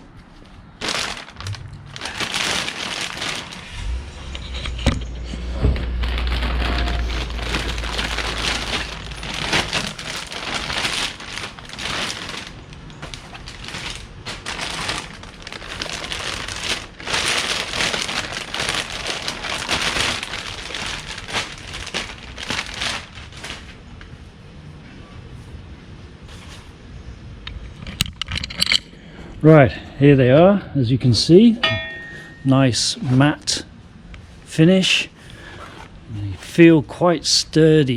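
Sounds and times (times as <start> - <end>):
packaging crinkling and rustling: 0.0 - 24.0.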